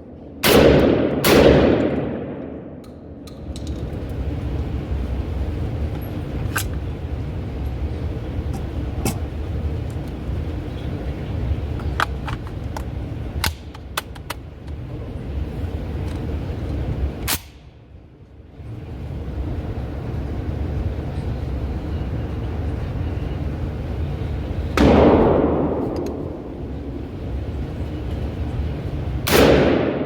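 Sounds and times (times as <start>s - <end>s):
steady low rumble: 0.0s - 30.0s
shotgun shots with echo: 0.4s - 2.6s, 24.8s - 26.2s, 29.3s - 30.0s.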